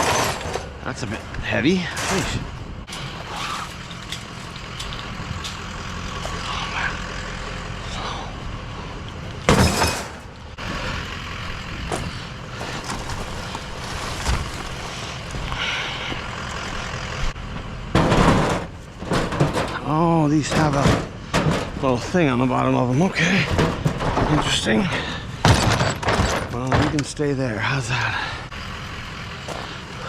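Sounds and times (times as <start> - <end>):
knocks and clatter of objects: 0.0 - 6.6, 9.4 - 10.4, 11.8 - 15.6, 17.9 - 22.2, 23.2 - 27.2
vehicle engine idling: 0.7 - 30.0.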